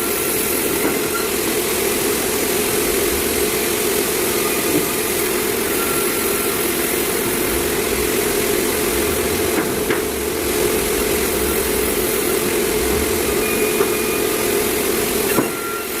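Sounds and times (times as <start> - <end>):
sawmill machinery running: 0.0 - 16.0.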